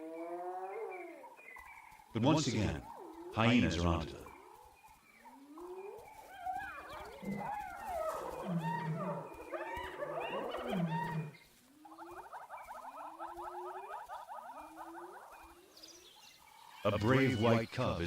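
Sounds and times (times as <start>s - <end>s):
hyenas cackling and whooping: 5.2s - 16.0s.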